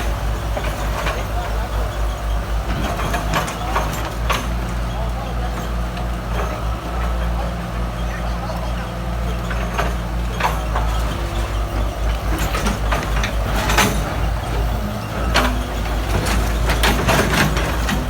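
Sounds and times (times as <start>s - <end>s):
backhoe engine rumbling: 0.0s - 18.0s
sharp metal knocks and clanks: 15.2s - 18.0s.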